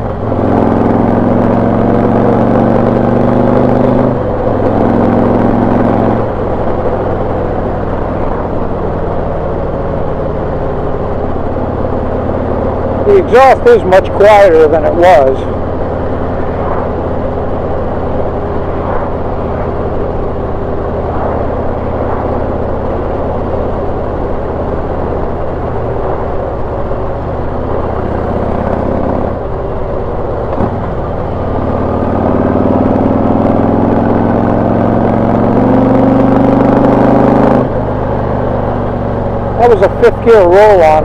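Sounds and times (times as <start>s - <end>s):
motorcycle engine cruising: 0.0s - 41.0s.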